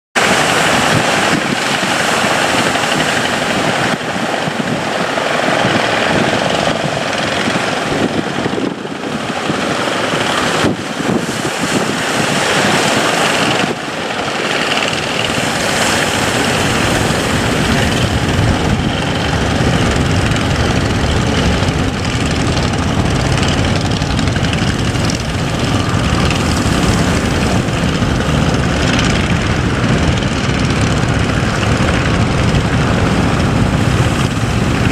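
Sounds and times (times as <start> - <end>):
boat engine running: 0.2 - 34.9
deep low drone: 0.2 - 34.9
loud rushing noise: 0.2 - 34.9.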